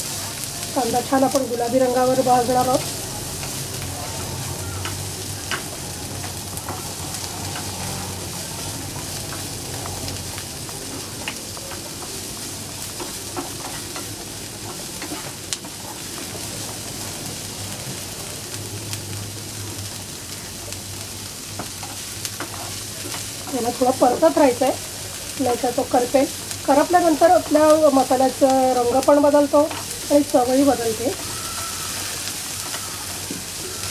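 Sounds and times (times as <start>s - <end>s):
onion sizzling in a pan: 0.0s - 33.9s
spatula clicking and scraping: 21.6s - 23.5s.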